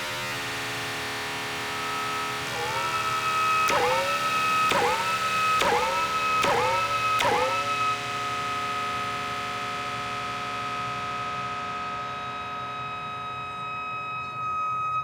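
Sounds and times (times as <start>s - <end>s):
synthesizer plucked notes swooping up: 3.7s - 7.8s.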